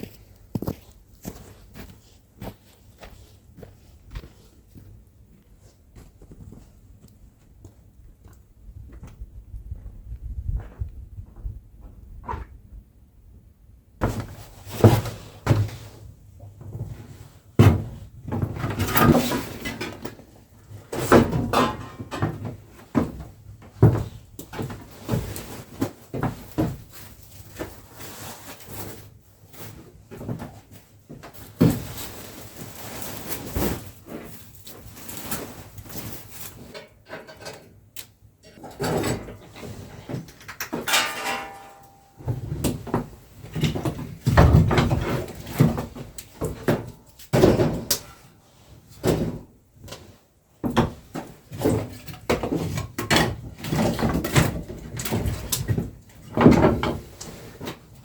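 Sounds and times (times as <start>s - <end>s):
knocks thuds and scrapes: 14.0s - 16.1s.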